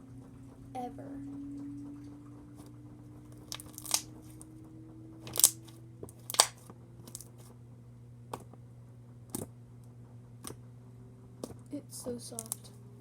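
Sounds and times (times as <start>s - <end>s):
slime squishing: 3.3s - 4.4s, 5.2s - 7.5s, 11.4s - 12.7s
slime crackling pops: 3.4s - 4.1s, 5.3s - 7.3s, 12.4s - 12.6s.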